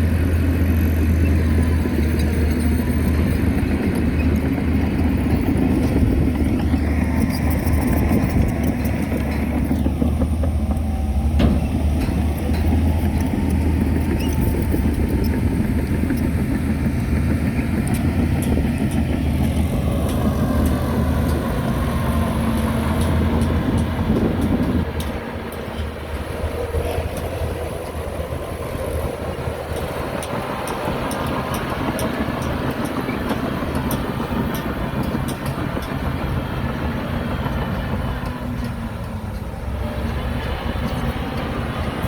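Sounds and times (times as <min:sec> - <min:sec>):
heavy diesel engine running: 0:00.0 - 0:42.0
light metallic clanks: 0:05.6 - 0:15.0.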